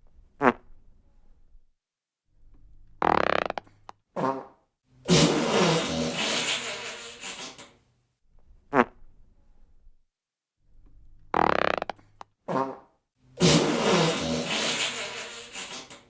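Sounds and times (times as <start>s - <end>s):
fart sound effects: 0.4s - 0.7s, 3.0s - 3.6s, 5.1s - 7.7s, 8.7s - 9.0s, 11.3s - 12.8s, 13.4s - 16.0s.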